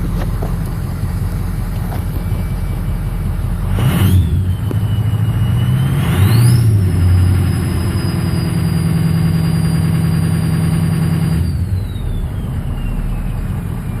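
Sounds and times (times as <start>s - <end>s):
diesel engine at high idle: 0.0s - 14.0s
turbo whistling: 2.0s - 14.0s.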